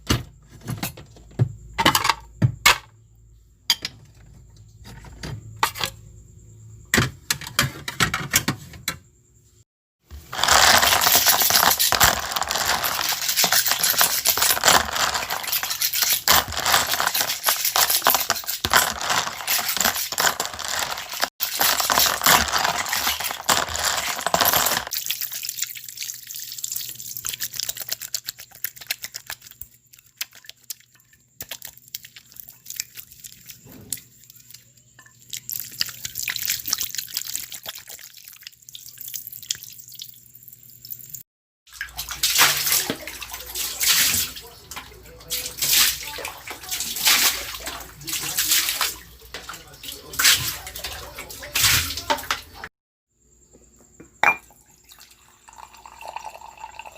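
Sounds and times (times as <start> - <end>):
water running and splashing: 10.2 - 52.4
water dripping: 24.9 - 43.6.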